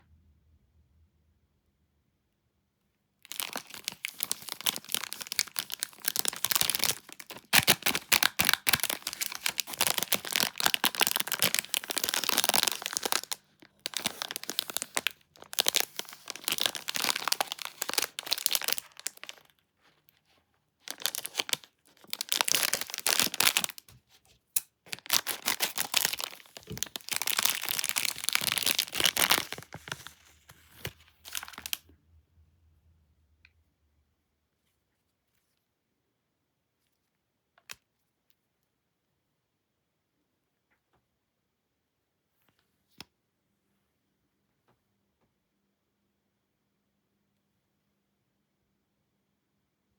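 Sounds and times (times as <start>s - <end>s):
snack packaging crinkling: 3.3s - 19.6s, 20.8s - 24.0s, 24.9s - 31.8s.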